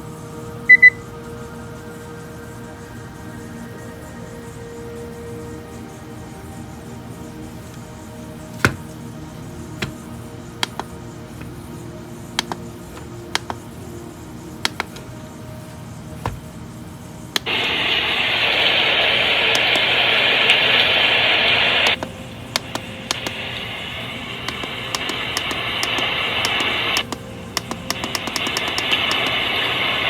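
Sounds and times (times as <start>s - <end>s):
loud steady hiss: 0.0s - 30.0s
sharp clicks: 10.6s - 11.5s, 12.4s - 13.6s, 14.6s - 15.1s, 17.4s - 17.6s, 21.8s - 23.4s, 24.5s - 29.4s.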